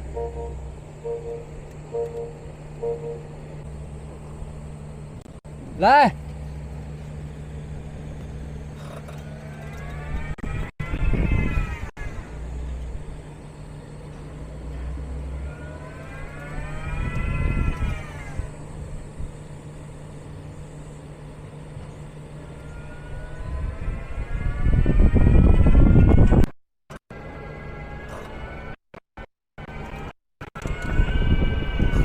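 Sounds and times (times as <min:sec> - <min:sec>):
steady low hum: 0:00.0 - 0:11.1, 0:11.8 - 0:25.1
electric motor whining: 0:06.3 - 0:13.6, 0:14.2 - 0:26.5, 0:29.8 - 0:32.0.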